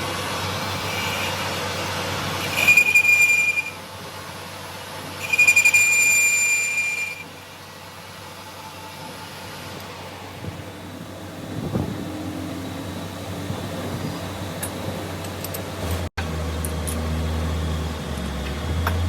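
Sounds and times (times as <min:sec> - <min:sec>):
metal-on-metal squealing: 0:00.6 - 0:03.9, 0:05.2 - 0:07.4.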